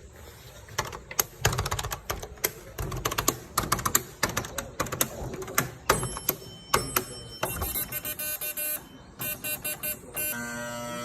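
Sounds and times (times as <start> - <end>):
elevator buttons clicking: 0.8 - 10.3
short electronic beep: 5.9 - 10.6.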